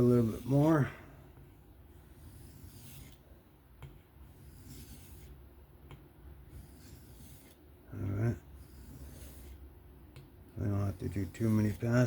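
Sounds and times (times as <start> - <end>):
knife scraping on whetstone: 0.0 - 0.8, 2.2 - 3.2, 4.3 - 5.4, 6.5 - 7.6, 8.6 - 9.6.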